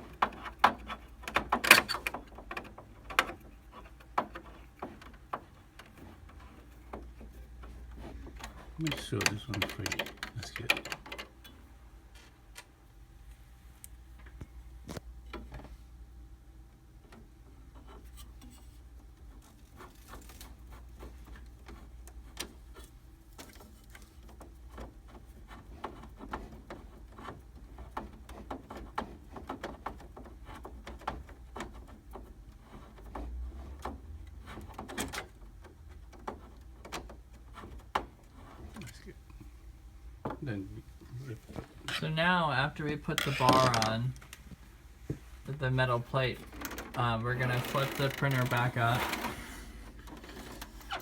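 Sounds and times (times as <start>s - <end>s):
plastic and metal parts clicking: 0.0s - 11.6s, 43.1s - 44.4s.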